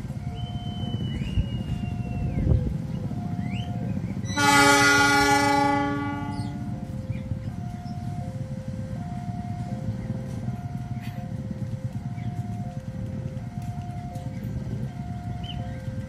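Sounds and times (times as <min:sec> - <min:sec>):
locomotive horn blast: 0:04.2 - 0:06.8.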